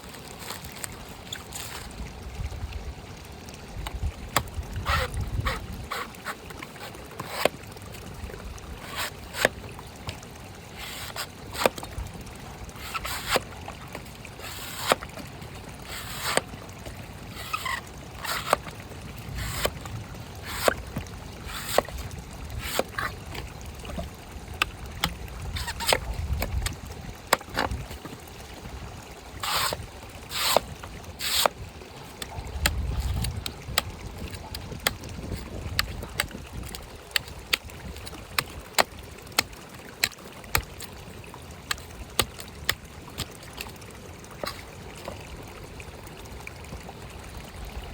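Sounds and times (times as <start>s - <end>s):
blade chopping coconut: 12.8s - 13.4s, 17.4s - 18.7s, 20.4s - 20.8s, 21.4s - 22.0s, 22.6s - 23.2s, 29.4s - 31.6s, 32.2s - 40.9s
short scraping strokes: 12.8s - 13.4s, 14.4s - 15.0s, 15.8s - 16.4s, 17.3s - 18.7s, 20.4s - 20.8s, 21.4s - 22.0s, 22.6s - 23.2s, 29.4s - 31.6s.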